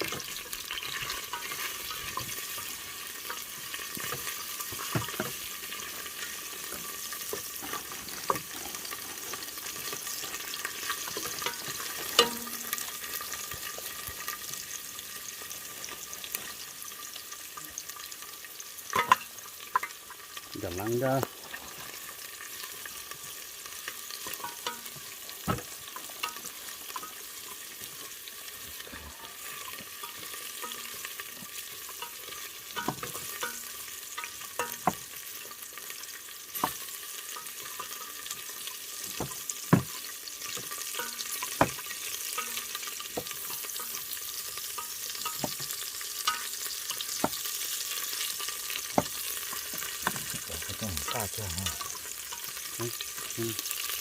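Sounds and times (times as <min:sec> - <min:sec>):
aromatics sizzling in a pan: 0:00.0 - 0:54.0
utensil clacking against pan: 0:10.9 - 0:12.9, 0:32.0 - 0:35.0, 0:39.1 - 0:44.0.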